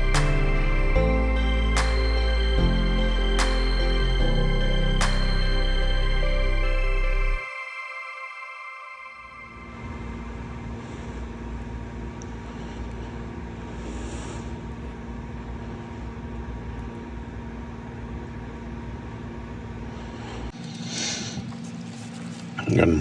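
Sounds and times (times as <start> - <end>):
low rumble and hum: 0.0 - 7.4.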